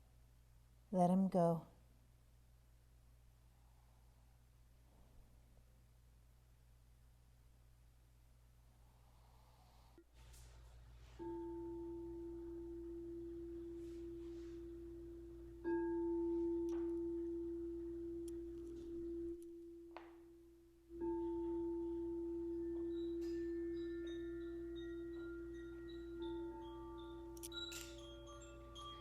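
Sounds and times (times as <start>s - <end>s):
crystal singing bowl ringing: 11.0s - 29.0s
high bell-like notes: 11.1s - 29.0s.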